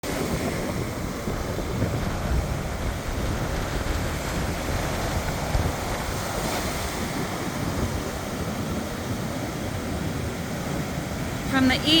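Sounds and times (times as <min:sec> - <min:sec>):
ocean waves rushing: 0:00.0 - 0:12.0.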